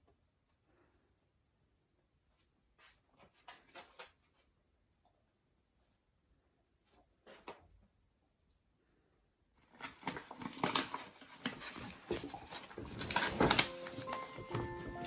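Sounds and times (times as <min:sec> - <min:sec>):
dog scratching and rustling: 0:10.1 - 0:15.0.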